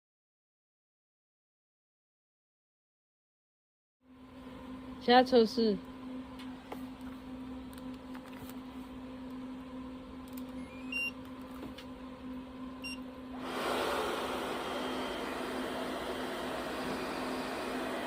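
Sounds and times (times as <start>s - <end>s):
hair dryer blowing air: 13.3s - 18.0s.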